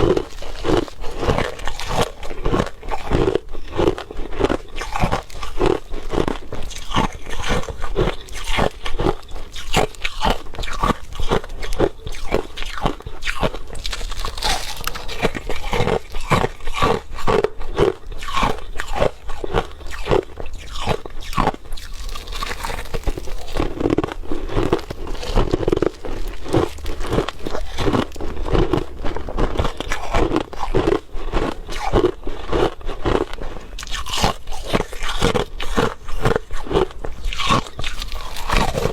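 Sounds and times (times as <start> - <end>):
crushed ice being chewed: 0.0 - 38.9.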